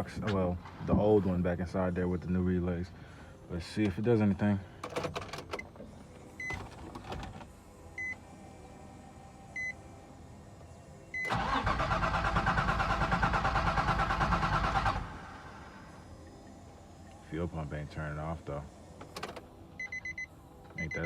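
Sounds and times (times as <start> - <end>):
car starter cranking: 4.8 - 7.6, 11.2 - 16.0, 18.9 - 20.0.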